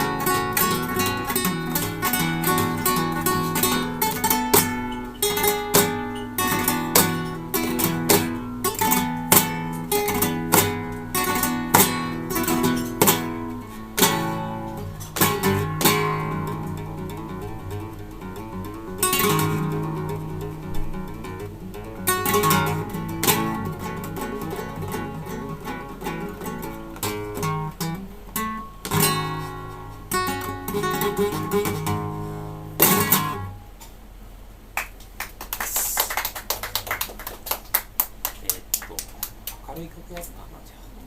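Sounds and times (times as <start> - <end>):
classical guitar playing: 0.0 - 33.8
audience clapping: 34.8 - 39.7.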